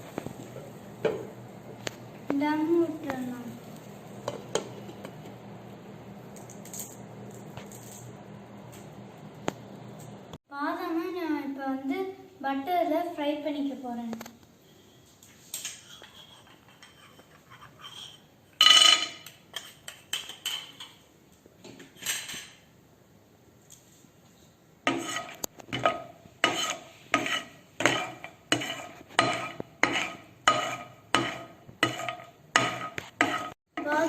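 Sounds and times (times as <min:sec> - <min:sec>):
spoon scraping pan: 0:15.7 - 0:18.3, 0:24.9 - 0:34.0.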